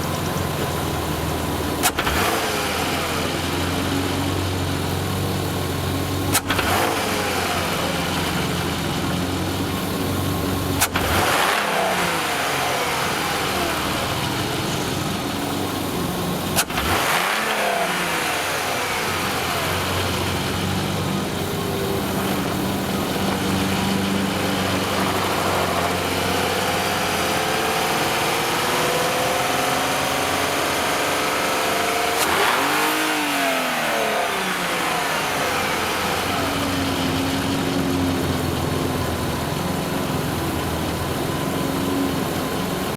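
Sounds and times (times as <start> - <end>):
rattling engine revving: 0.0 - 42.9
sharp clicks: 6.3 - 6.7.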